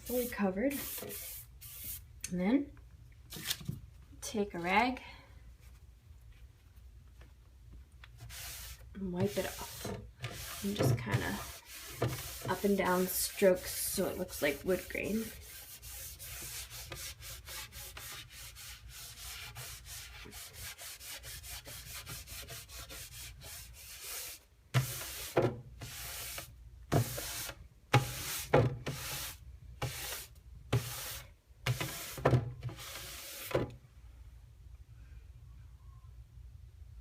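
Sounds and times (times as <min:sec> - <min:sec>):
cloth rag rubbing on wood: 0:08.2 - 0:31.2.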